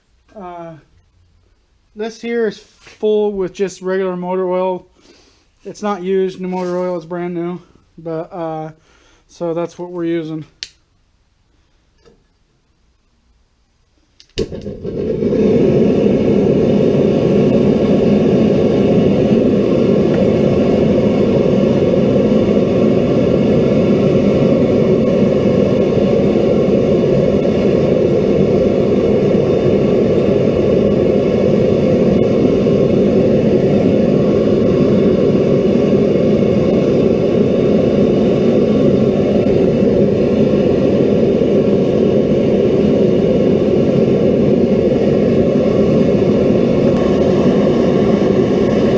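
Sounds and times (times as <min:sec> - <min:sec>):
forge roaring flame and air: 0:14.4 - 0:48.9.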